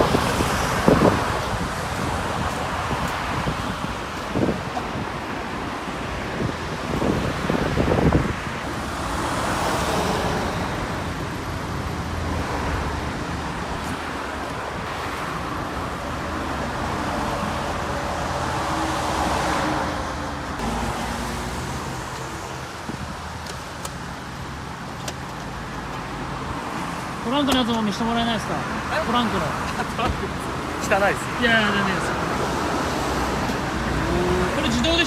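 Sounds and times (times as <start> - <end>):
wind buffet on microphone: 0.0 - 20.6
cars passing by: 0.0 - 35.0
steady traffic hum: 0.0 - 35.0.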